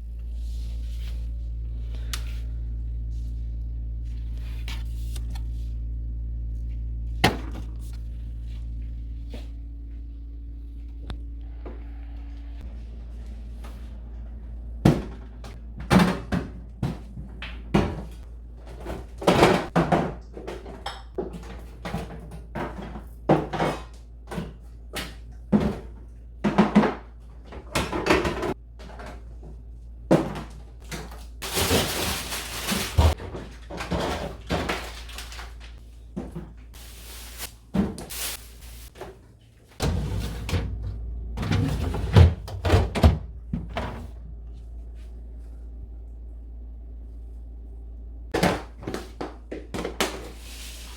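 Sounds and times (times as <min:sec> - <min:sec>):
steady low hum: 0:00.0 - 0:20.2, 0:22.3 - 0:49.8
fridge doors and drawers shutting: 0:13.5 - 0:29.5, 0:30.1 - 0:44.4.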